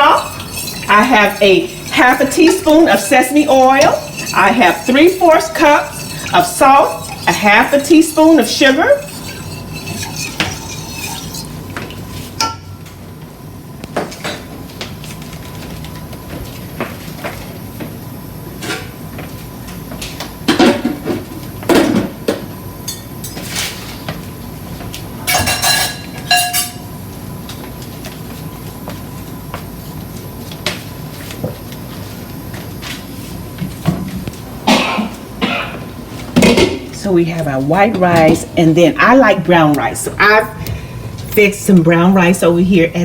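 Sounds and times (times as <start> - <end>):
cookware clattering: 0.0 - 12.7, 25.3 - 26.9
kitchen utensils clinking: 0.0 - 12.8, 25.3 - 26.9.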